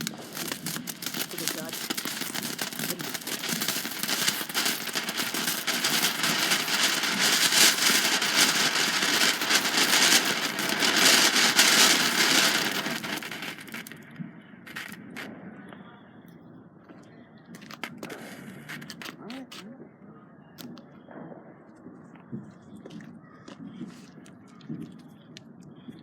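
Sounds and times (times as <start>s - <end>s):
firework crackling hiss: 0.0s - 14.0s, 14.7s - 15.3s.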